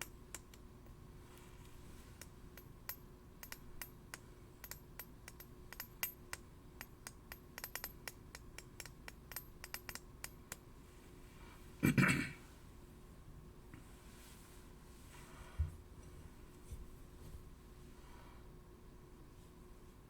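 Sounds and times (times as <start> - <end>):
steel blades tapping together: 2.2 - 10.6.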